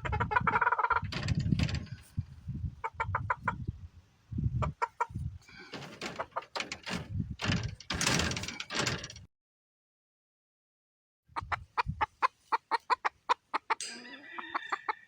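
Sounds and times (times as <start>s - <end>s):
chickens clucking: 0.0s - 3.8s, 4.4s - 7.6s, 11.3s - 15.0s.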